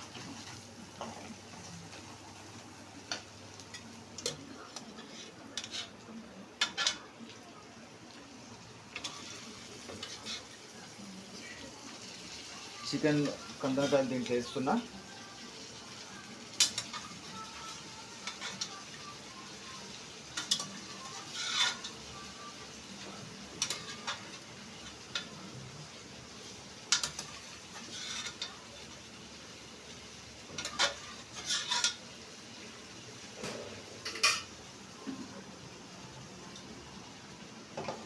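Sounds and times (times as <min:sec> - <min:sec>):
low steady sizzle: 0:00.0 - 0:38.0
metal spoon scraping a pan: 0:03.1 - 0:06.0, 0:06.6 - 0:07.1, 0:09.0 - 0:10.6, 0:16.6 - 0:18.9, 0:20.4 - 0:22.3, 0:23.6 - 0:25.3, 0:26.9 - 0:28.5, 0:30.6 - 0:32.0, 0:34.0 - 0:34.5.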